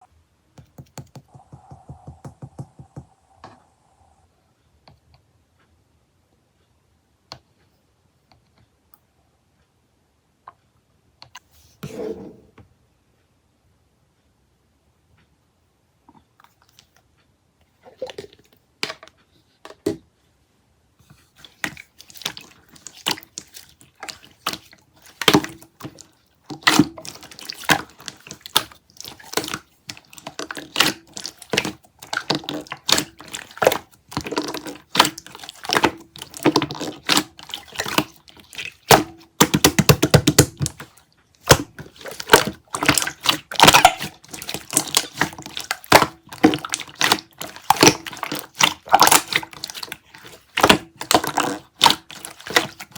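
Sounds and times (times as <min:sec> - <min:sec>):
sticky material clicking and crackling: 0:22.0 - 0:52.9.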